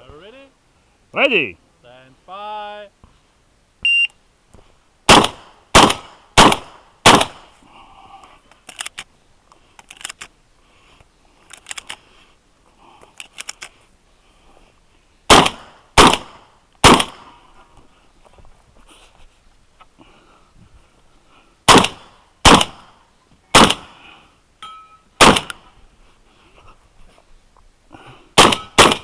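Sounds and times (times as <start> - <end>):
shotgun shots: 5.1 - 7.5, 15.3 - 17.3, 21.7 - 22.9, 23.5 - 24.0, 25.2 - 25.7, 28.4 - 29.0.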